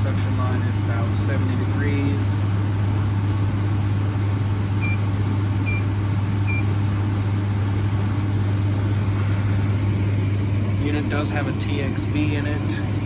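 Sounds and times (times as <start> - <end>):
compressor low hum: 0.0 - 13.0.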